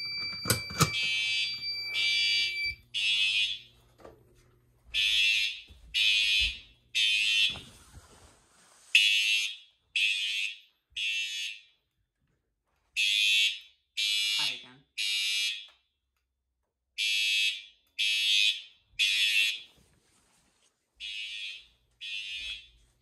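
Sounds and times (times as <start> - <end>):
fire alarm horns buzzing: 0.0 - 3.7, 5.0 - 7.6, 9.0 - 11.8, 13.0 - 15.8, 17.0 - 19.7, 21.0 - 22.8.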